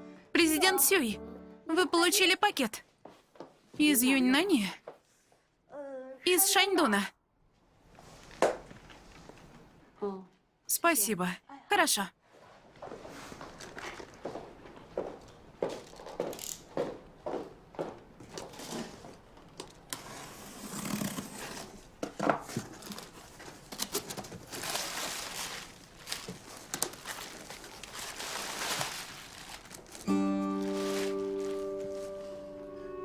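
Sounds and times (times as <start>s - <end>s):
packaging crinkling and rustling: 22.4s - 32.4s
packaging tearing: 22.8s - 32.1s.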